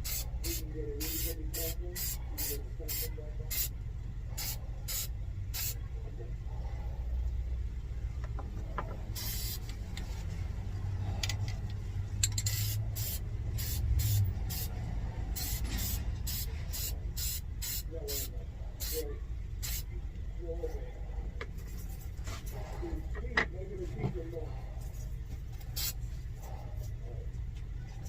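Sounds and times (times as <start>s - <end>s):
spray paint can hissing: 0.0s - 3.7s, 4.4s - 5.8s, 9.2s - 9.7s, 12.5s - 14.7s, 15.3s - 19.0s, 19.6s - 19.8s, 25.8s - 26.0s.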